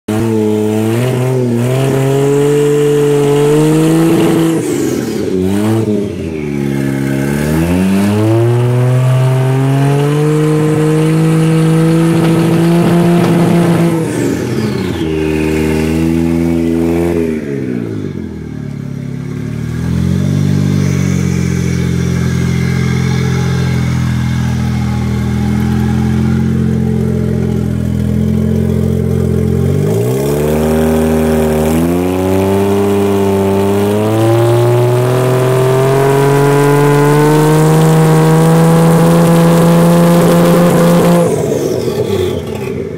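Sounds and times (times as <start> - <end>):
car engine revving and misfiring: 0.1 - 42.9
car engine idling: 11.9 - 30.1.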